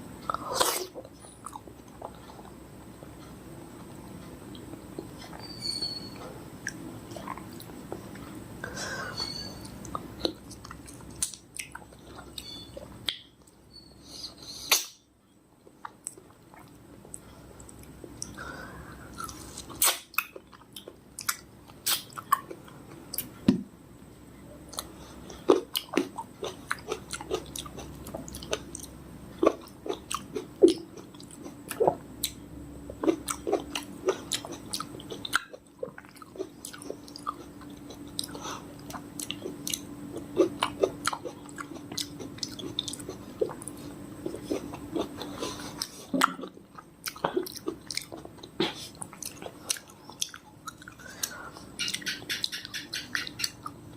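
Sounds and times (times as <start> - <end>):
chewing fresh fruit: 24.7 - 53.8.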